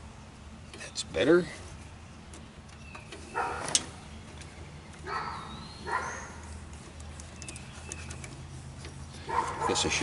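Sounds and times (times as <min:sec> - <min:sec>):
dog barking: 0:03.4 - 0:03.7, 0:05.0 - 0:06.4, 0:09.3 - 0:10.0.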